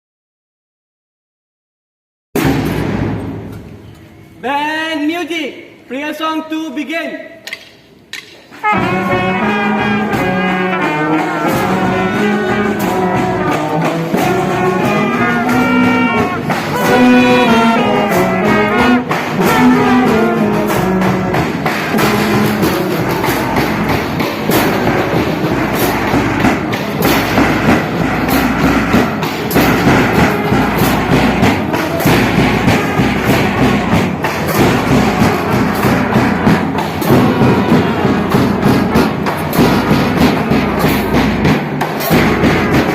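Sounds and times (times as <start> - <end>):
school band playing: 2.4 - 4.4, 8.2 - 42.9
brass instruments: 8.5 - 42.9
steady drum beat: 8.6 - 42.9.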